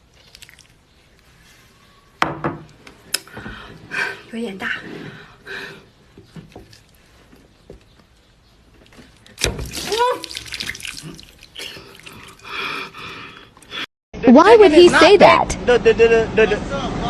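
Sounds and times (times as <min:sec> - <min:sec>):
loud wet slurping: 0:00.0 - 0:00.8, 0:09.7 - 0:13.8
wet mouth clicks: 0:00.2 - 0:00.8.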